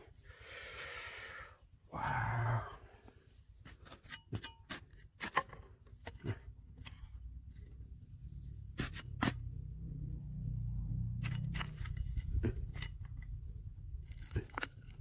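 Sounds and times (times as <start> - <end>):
low steady rumble: 0.0 - 15.0
stones and gravel being dug: 3.6 - 7.0, 11.2 - 15.0.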